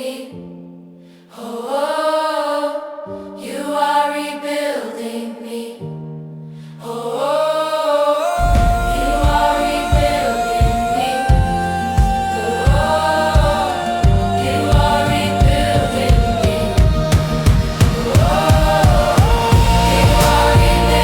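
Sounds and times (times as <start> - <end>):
choir singing wordless vowels: 0.0 - 6.0, 6.6 - 21.0
heavy drum beat: 8.4 - 21.0.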